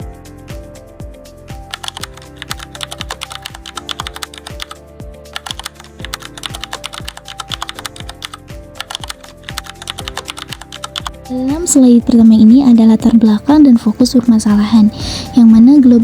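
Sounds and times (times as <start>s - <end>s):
music with kick-drum beat: 0.0s - 13.2s
typewriter-effect typing clicks: 1.8s - 11.2s.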